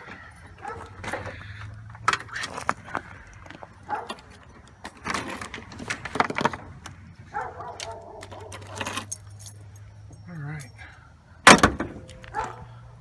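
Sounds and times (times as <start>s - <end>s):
metal cables and clamps clinking: 7.8s - 10.9s.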